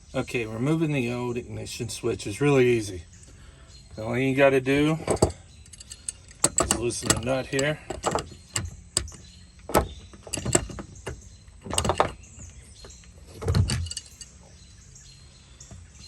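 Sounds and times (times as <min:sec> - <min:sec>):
light rattling: 0:00.2 - 0:16.0
wrench clinking on metal: 0:04.8 - 0:12.2, 0:13.5 - 0:14.4.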